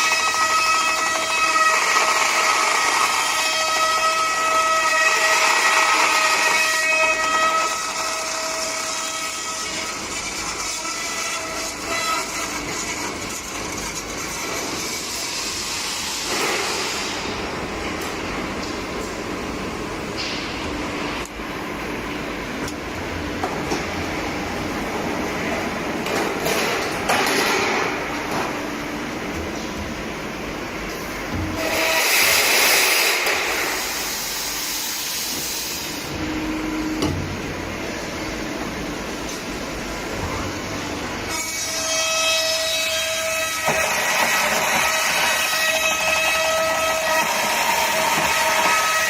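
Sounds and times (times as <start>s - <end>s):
loud hissing cutting noise: 31.6s - 36.2s
steady machine hum: 33.1s - 41.3s
metal cutting machine running: 42.6s - 49.0s.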